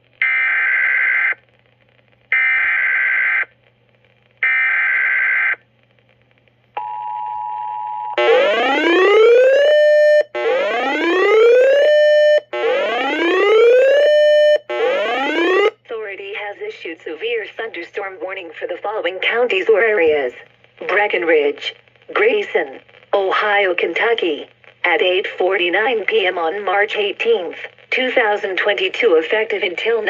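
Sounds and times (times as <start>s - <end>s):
whooping alarm tone: 8.2s - 15.7s.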